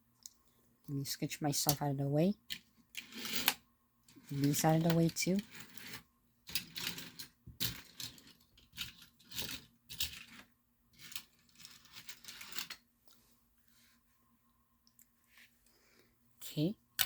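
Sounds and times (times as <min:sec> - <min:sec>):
toy cars clicking and clinking: 0:04.2 - 0:12.8.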